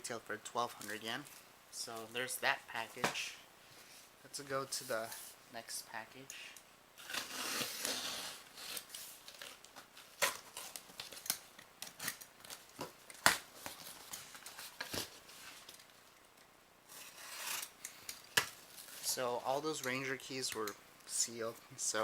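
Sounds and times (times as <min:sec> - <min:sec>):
packaging rustling and tearing: 0:07.0 - 0:16.0, 0:16.9 - 0:19.2.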